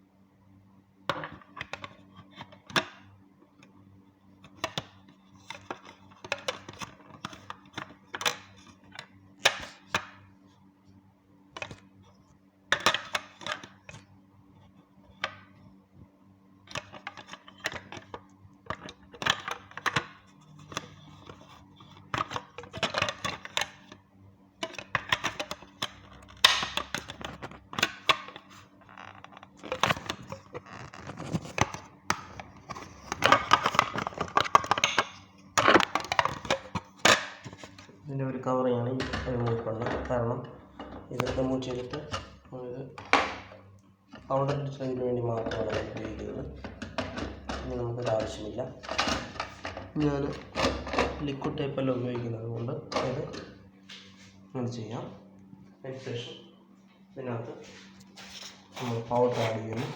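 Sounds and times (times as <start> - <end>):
faint low hum: 0.0 - 59.9
plastic clicks and rattles: 1.1 - 3.1, 4.4 - 10.1, 12.7 - 14.0, 16.7 - 24.0, 24.6 - 37.9, 45.4 - 51.2.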